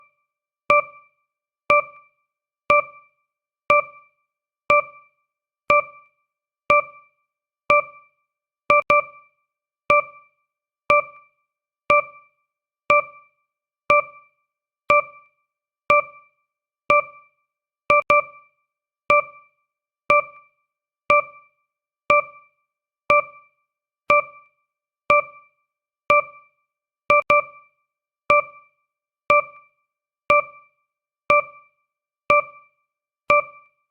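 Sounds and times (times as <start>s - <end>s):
electronic timer tick note: 0.7s - 1.1s, 1.7s - 2.1s, 2.7s - 3.1s, 3.7s - 4.1s, 4.7s - 5.1s, 5.7s - 6.1s, 6.7s - 7.1s, 7.7s - 8.1s, 8.7s - 9.3s, 9.9s - 10.3s, 10.9s - 11.3s, 11.9s - 12.3s, 12.9s - 13.3s, 13.9s - 14.3s, 14.9s - 15.3s, 15.9s - 16.3s, 16.9s - 17.3s, 17.9s - 18.5s, 19.1s - 19.5s, 20.1s - 20.5s, 21.1s - 21.5s, 22.1s - 22.5s, 23.1s - 23.5s, 24.1s - 24.5s, 25.1s - 25.5s, 26.1s - 26.5s, 27.1s - 27.7s, 28.3s - 28.7s, 29.3s - 29.7s, 30.3s - 30.7s, 31.3s - 31.7s, 32.3s - 33.8s.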